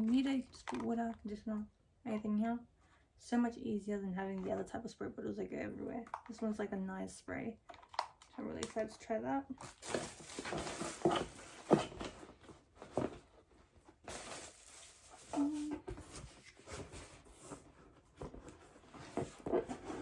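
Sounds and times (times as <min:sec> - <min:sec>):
packaging knocks and rustles: 0:09.6 - 0:13.3.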